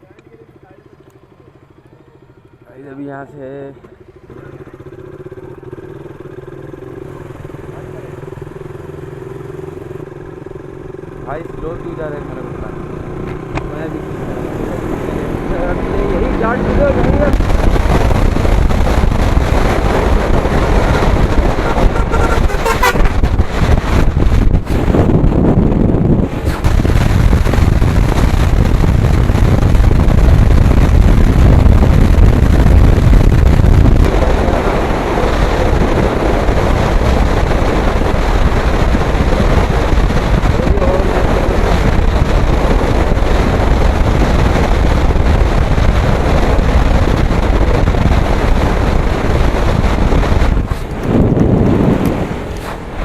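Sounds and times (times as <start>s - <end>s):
motorbike noise: 0.0s - 53.0s
wind buffeting microphone: 14.8s - 53.0s.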